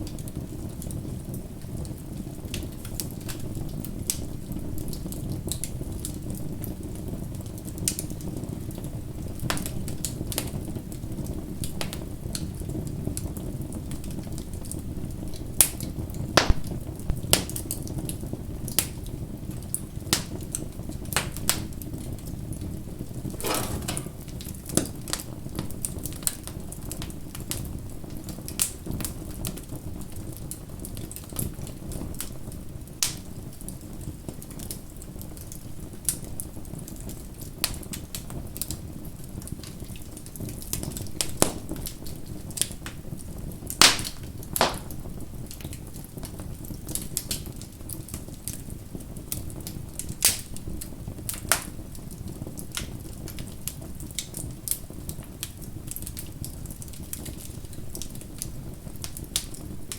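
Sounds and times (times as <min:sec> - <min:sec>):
bonfire crackling and popping: 0:26.2 - 0:59.9.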